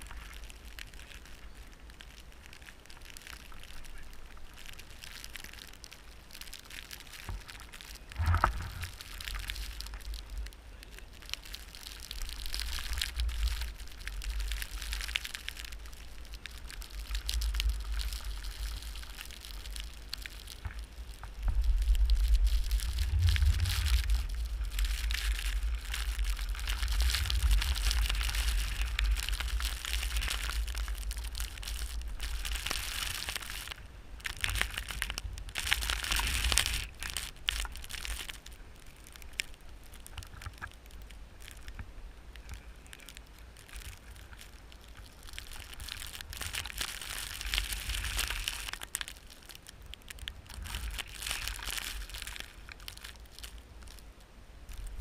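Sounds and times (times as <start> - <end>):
snow crunching and scraping: 7.3 - 11.0, 21.7 - 33.2
wind buffeting microphone: 8.1 - 10.5, 21.3 - 31.4.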